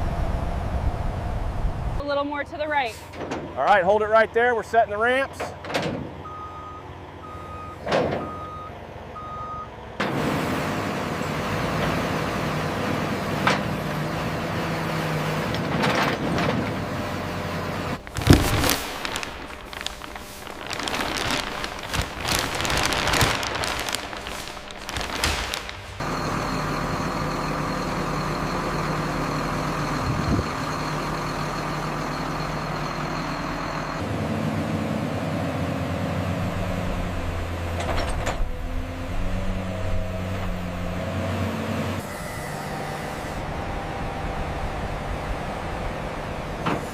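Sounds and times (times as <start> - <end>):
heavy machine engine running: 5.5 - 46.9
reversing alarm beeps: 6.2 - 9.7.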